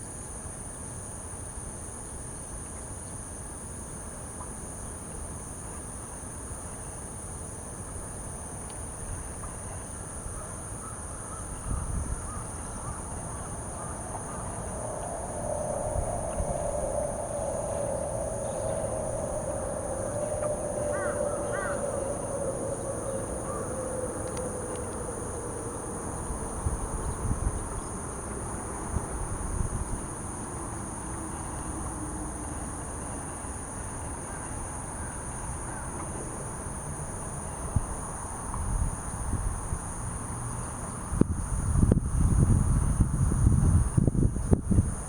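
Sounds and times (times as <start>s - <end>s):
insects trilling: 0.1s - 45.0s
wind on microphone: 11.6s - 30.4s, 41.1s - 45.0s
low drone: 13.4s - 28.7s.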